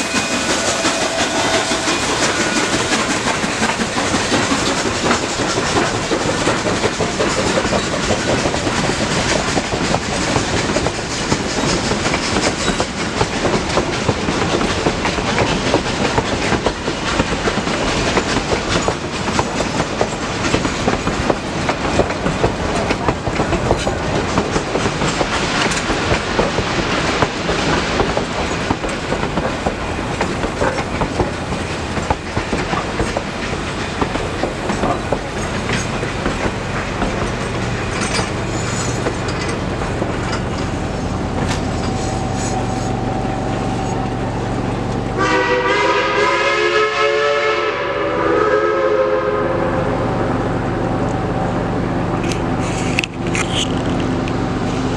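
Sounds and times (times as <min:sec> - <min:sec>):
train wheels clicking over rail joints: 0:00.0 - 0:45.6, 0:51.0 - 0:54.9
train rumble: 0:00.0 - 0:54.9.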